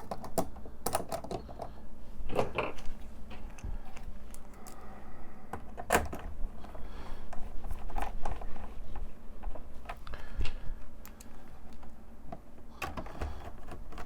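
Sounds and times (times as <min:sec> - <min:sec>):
small parts clicking and knocking: 0:00.0 - 0:04.9.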